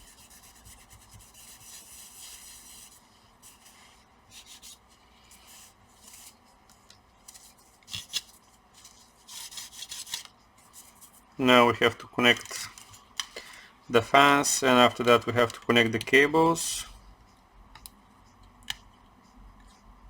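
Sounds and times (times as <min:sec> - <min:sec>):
laptop parts rubbing and scraping: 0:00.0 - 0:11.3.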